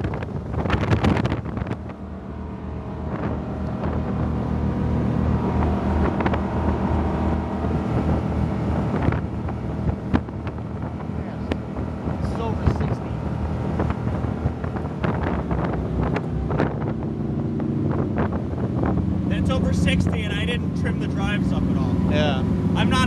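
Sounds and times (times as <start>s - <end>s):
powerboat engines running hard: 0.0s - 23.0s
wind buffeting microphone: 0.0s - 23.0s.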